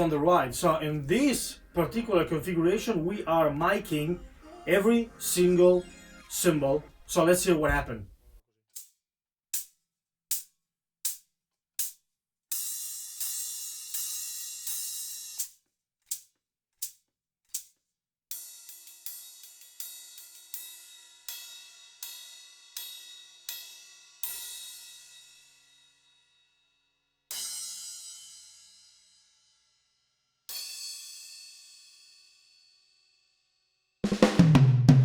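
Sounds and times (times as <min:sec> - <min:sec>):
low drum hit: 0:34.1 - 0:35.0.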